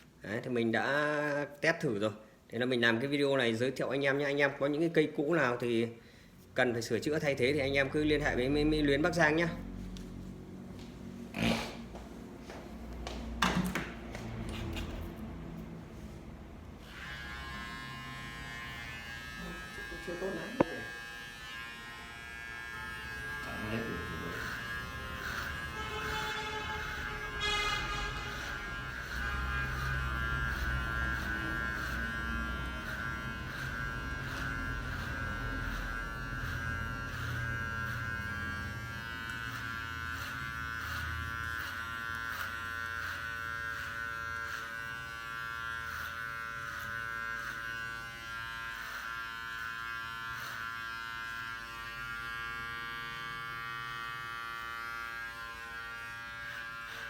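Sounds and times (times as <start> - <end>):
hair clipper buzzing: 16.7 - 57.0.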